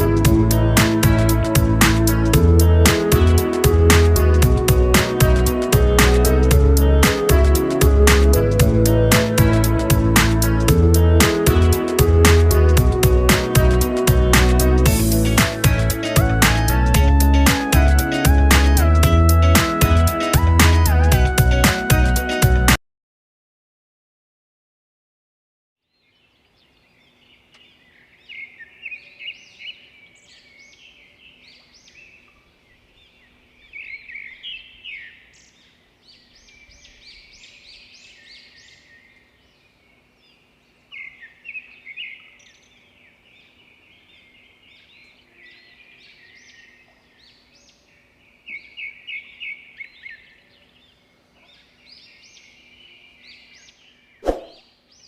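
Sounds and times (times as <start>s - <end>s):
birds chirping: 26.0s - 55.0s.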